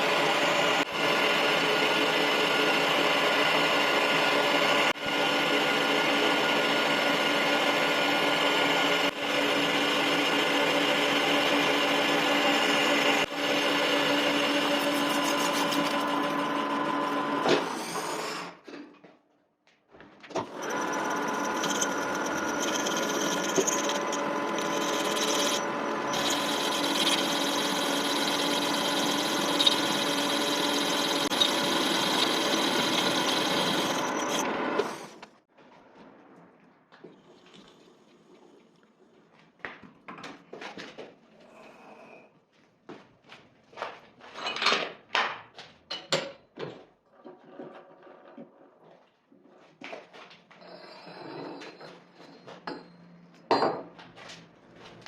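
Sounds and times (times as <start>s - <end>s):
lathe motor and gear whine: 0.0s - 17.5s, 20.4s - 35.3s.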